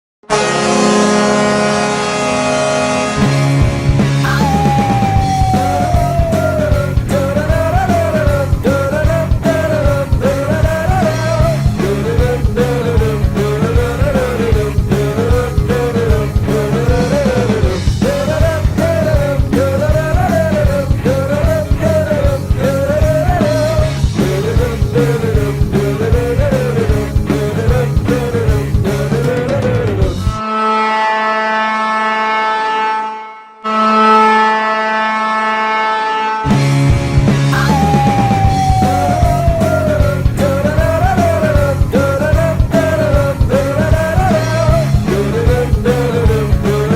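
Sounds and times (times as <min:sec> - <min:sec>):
arena goal horn blaring: 0:00.2 - 0:04.6, 0:30.4 - 0:38.6
rock song with heavy beat: 0:03.1 - 0:30.4, 0:36.5 - 0:46.9.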